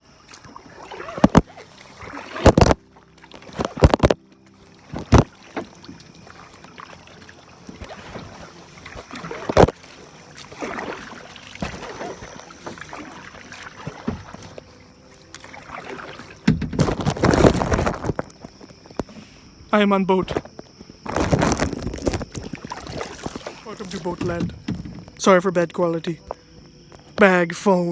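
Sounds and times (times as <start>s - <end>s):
water and boat noise: 0.0s - 27.9s
plastic bag rustling: 16.7s - 18.4s, 21.0s - 23.8s.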